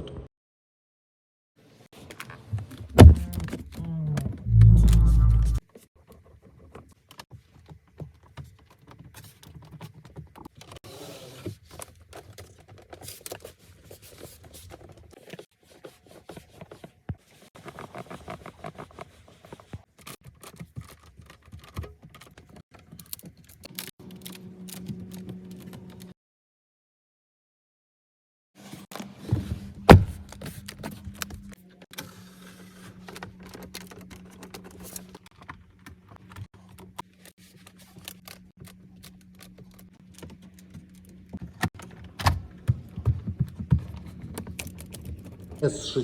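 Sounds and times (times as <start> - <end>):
car interior clicks and creaks: 2.1 - 5.6
low steady rumble: 4.3 - 5.6.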